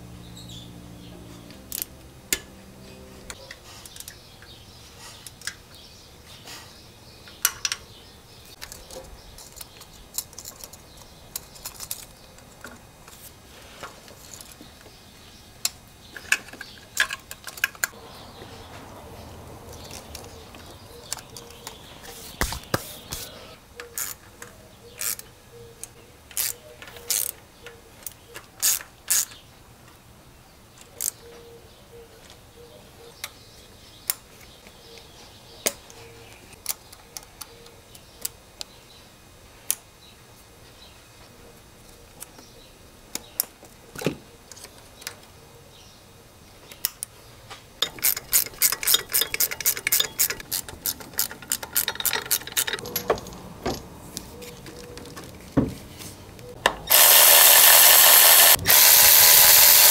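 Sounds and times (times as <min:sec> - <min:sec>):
ratchet wrench clicking: 0:23.9 - 0:24.3, 0:25.0 - 0:25.3, 0:26.3 - 0:27.4, 0:28.6 - 0:29.4, 0:47.8 - 0:52.9, 0:56.9 - 0:59.9.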